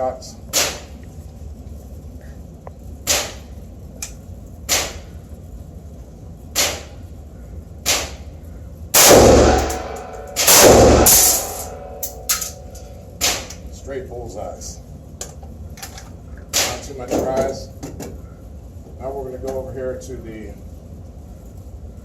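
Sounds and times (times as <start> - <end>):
rifle shots with echo: 9.0 - 12.6.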